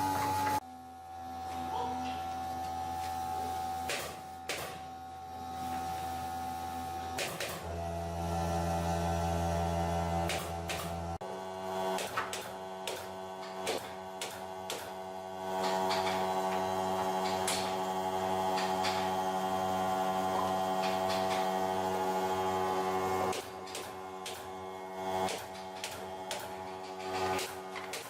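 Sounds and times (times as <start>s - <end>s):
electric motor hum: 0.0s - 28.0s
sharp clicks and knocks: 20.4s - 21.5s, 25.2s - 28.0s.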